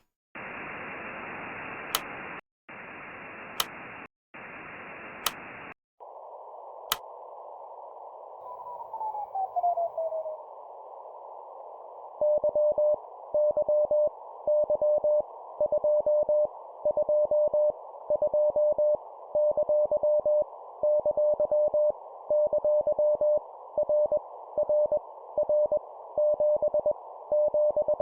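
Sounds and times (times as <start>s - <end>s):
radio static hiss: 0.0s - 7.0s
sharp clicks: 1.9s - 2.2s, 3.6s - 3.9s, 5.2s - 5.6s.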